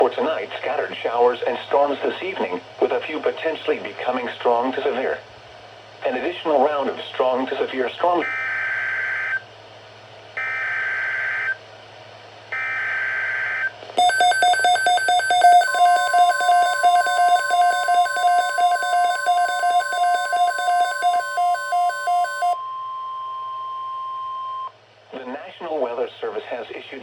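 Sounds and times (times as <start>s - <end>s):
steady warning tone: 14.0s - 22.6s
two-pitch electronic alarm: 14.0s - 22.6s
warbling data tones: 14.0s - 22.6s.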